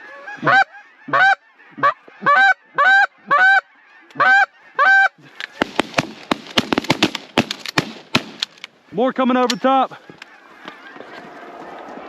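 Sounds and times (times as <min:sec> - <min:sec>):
goose honking: 0:00.0 - 0:05.4, 0:09.9 - 0:11.8
sharp cracks: 0:05.4 - 0:08.8.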